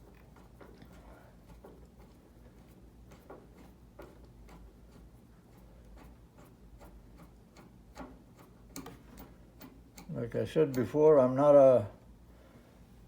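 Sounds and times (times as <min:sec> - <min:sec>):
screwdriver clicks and metallic ticks: 0:06.8 - 0:11.0.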